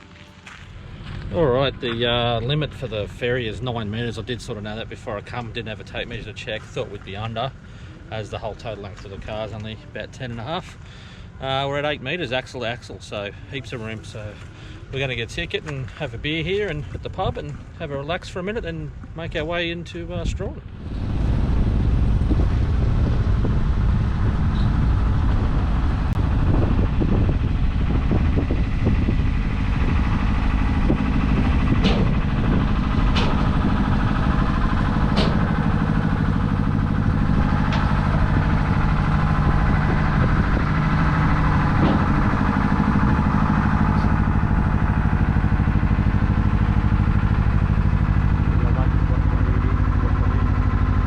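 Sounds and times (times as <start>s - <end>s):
engine running: 0.0s - 51.0s.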